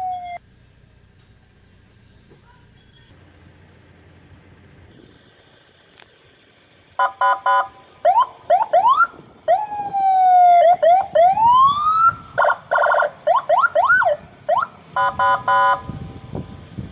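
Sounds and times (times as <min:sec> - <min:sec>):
electronic vehicle siren: 0:00.0 - 0:00.4, 0:07.0 - 0:16.6.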